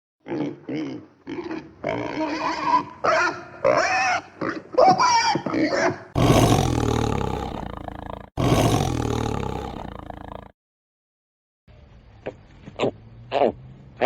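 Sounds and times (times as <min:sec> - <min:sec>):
large animal roaring: 0:06.2 - 0:10.5.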